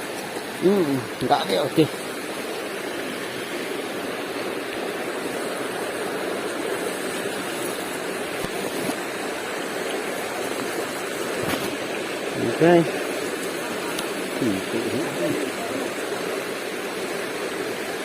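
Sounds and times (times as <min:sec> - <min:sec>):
river water rushing: 0:00.0 - 0:18.0.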